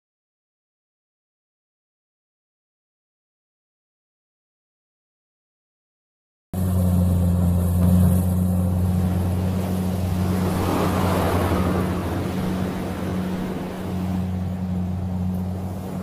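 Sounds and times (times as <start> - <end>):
combine harvester engine drone: 6.6 - 16.0.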